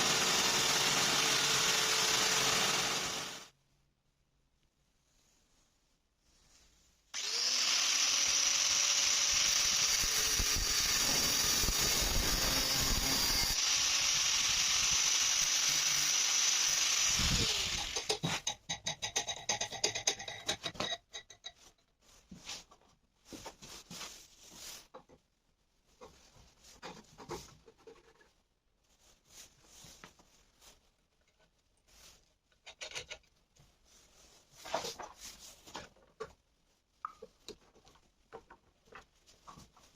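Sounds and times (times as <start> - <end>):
power tool running: 0.0 - 3.5, 7.2 - 18.1.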